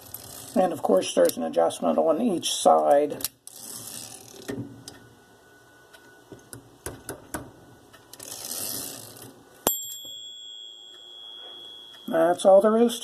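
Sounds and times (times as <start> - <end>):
typewriter carriage bell ringing: 9.7 - 13.0.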